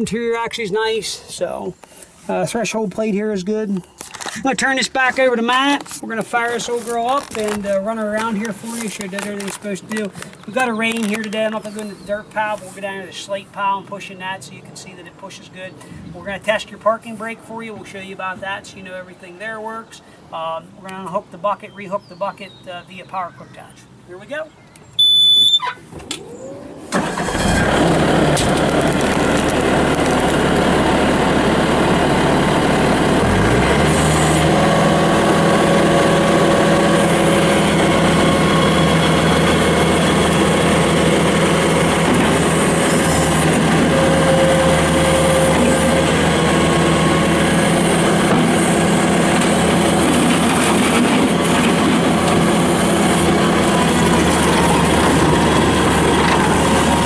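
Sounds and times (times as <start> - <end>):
high beep: 25.0 - 25.7
diesel engine running: 26.7 - 57.0.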